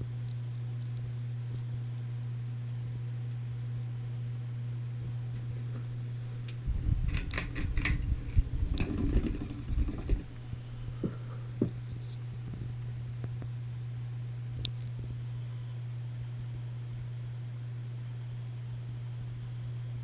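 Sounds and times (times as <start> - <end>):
ceiling fan motor humming: 0.0 - 20.0
rattling and clicking: 6.5 - 10.4.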